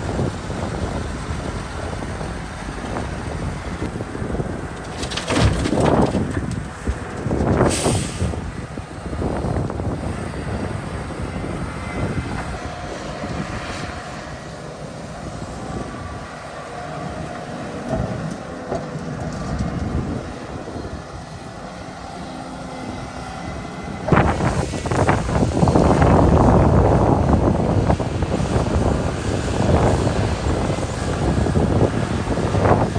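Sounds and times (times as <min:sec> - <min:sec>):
excavator diesel engine running: 0:00.0 - 0:32.9
loud rushing noise: 0:21.3 - 0:32.9.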